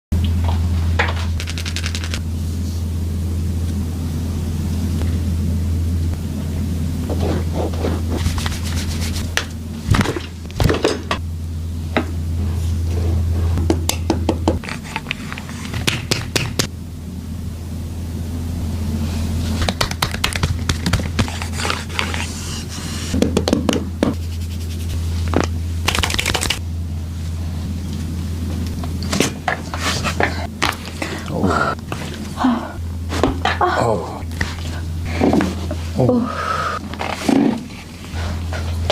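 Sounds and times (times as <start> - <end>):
steady low hum: 0.1 - 38.9
hands rubbing skin and clothing: 7.0 - 9.5, 14.6 - 16.6, 19.4 - 23.2, 24.2 - 26.6.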